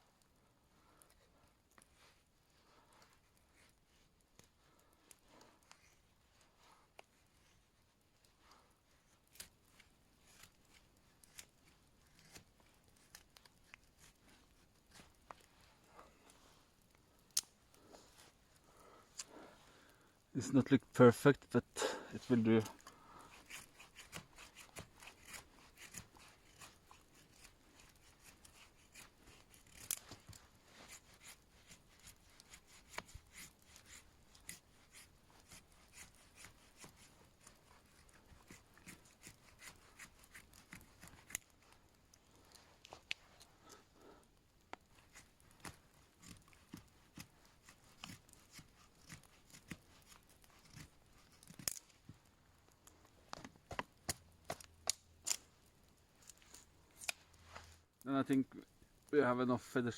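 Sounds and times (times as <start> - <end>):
knife scraping wood: 9.3 - 15.5, 22.2 - 41.8, 44.8 - 51.9.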